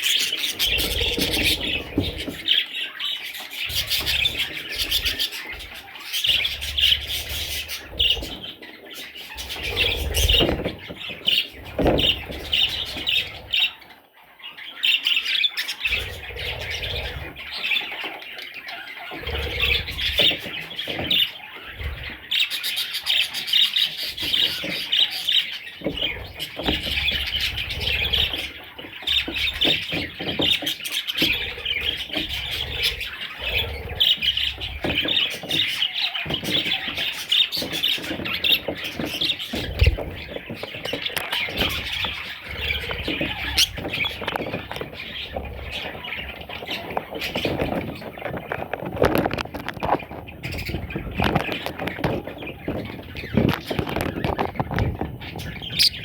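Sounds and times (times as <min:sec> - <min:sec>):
budgerigars chattering and squawking: 0:00.0 - 0:56.0.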